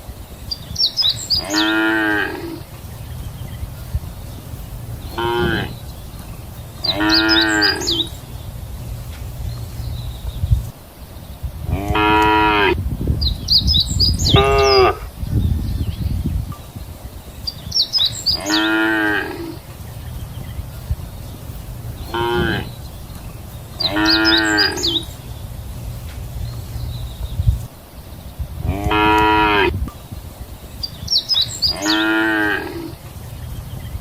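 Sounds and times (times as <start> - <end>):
cows mooing: 1.4 - 2.6, 5.1 - 5.8, 6.8 - 8.2, 11.7 - 12.8, 18.4 - 19.6, 22.1 - 22.8, 23.8 - 25.1, 28.6 - 29.8, 31.7 - 33.0
low background rumble: 2.6 - 11.9, 19.5 - 29.0.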